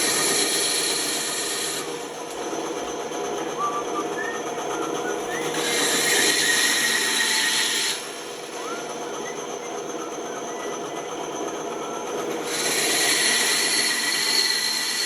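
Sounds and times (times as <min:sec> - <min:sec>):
saw blade cutting wood: 0:00.0 - 0:02.0, 0:05.3 - 0:08.2, 0:12.3 - 0:15.0
bandsaw running: 0:00.0 - 0:09.2, 0:10.8 - 0:15.0.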